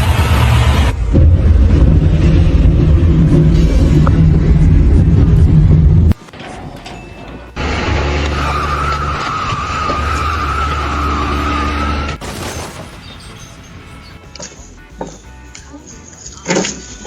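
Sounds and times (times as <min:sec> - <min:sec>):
low engine hum: 0:00.0 - 0:06.2
loud wavering screech: 0:07.6 - 0:12.2.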